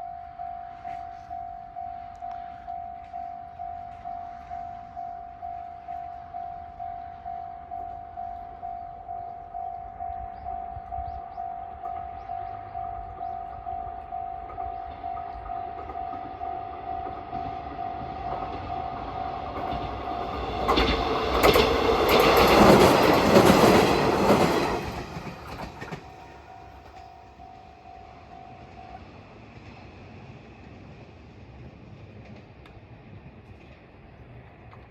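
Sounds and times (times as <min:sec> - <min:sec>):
level crossing warning bell: 0:00.0 - 0:29.2
train wheels clattering on rails: 0:14.0 - 0:27.5, 0:28.4 - 0:34.9.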